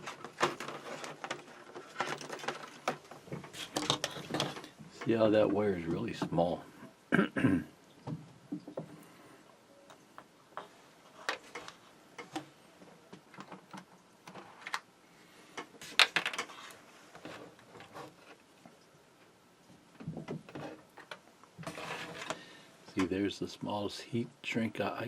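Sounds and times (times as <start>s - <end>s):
small tools handled on workbench: 0.0s - 5.1s, 15.6s - 18.4s, 20.5s - 22.4s.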